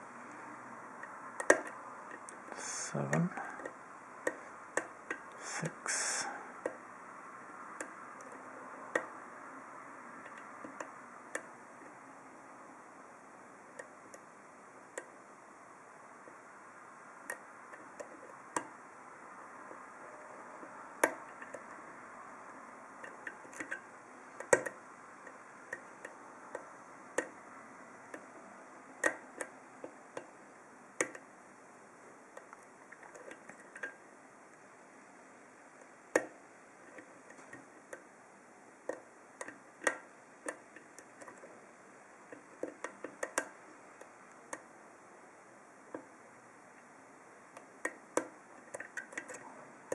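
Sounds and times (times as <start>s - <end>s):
lock pick metallic clicks: 1.0s - 2.4s, 31.0s - 31.3s.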